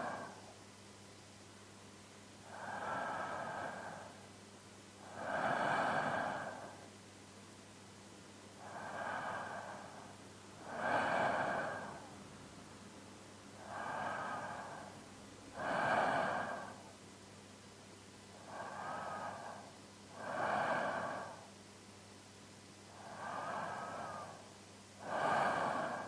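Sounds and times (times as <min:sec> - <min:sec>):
man's deep sleep breathing: 0:00.0 - 0:00.6, 0:02.4 - 0:04.3, 0:05.0 - 0:06.9, 0:08.6 - 0:12.2, 0:13.6 - 0:17.0, 0:18.3 - 0:21.6, 0:22.9 - 0:26.0.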